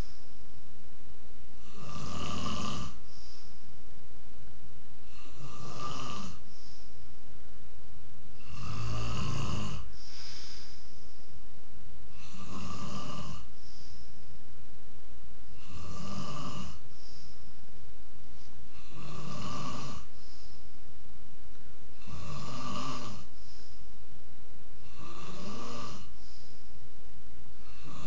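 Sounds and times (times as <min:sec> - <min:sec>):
faint breathing: 0:00.0 - 0:00.7, 0:01.5 - 0:04.0, 0:05.0 - 0:07.4, 0:08.3 - 0:14.6, 0:15.4 - 0:21.0, 0:21.9 - 0:24.1, 0:24.8 - 0:28.0
man snoring: 0:01.6 - 0:03.3, 0:05.0 - 0:06.4, 0:08.4 - 0:10.7, 0:12.1 - 0:13.5, 0:15.5 - 0:17.2, 0:18.7 - 0:20.4, 0:21.9 - 0:23.3, 0:24.8 - 0:26.2, 0:27.6 - 0:28.0.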